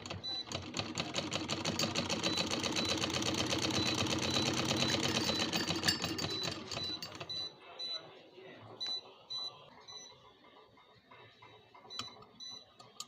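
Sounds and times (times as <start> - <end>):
sewing machine running: 0.0 - 7.5.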